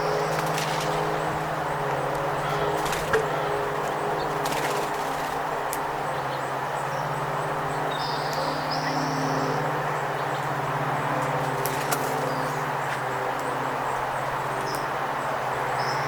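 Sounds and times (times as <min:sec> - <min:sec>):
songbird call: 0:07.8 - 0:10.5.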